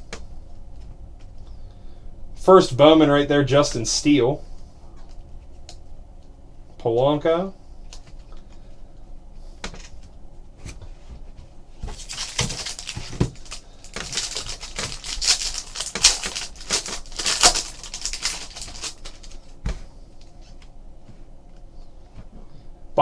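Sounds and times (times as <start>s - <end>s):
trading card pack crinkling: 11.8s - 20.4s.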